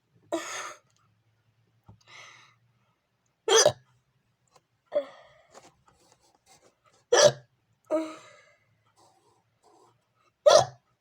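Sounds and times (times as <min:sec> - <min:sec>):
child hiccuping: 0:03.5 - 0:03.8.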